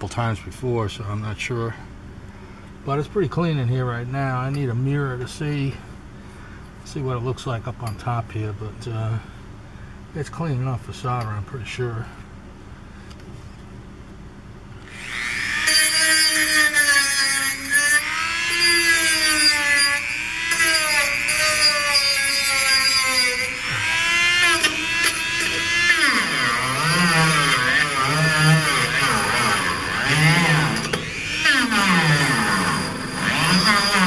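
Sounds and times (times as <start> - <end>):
rotary tool whining on metal: 14.8 - 34.0.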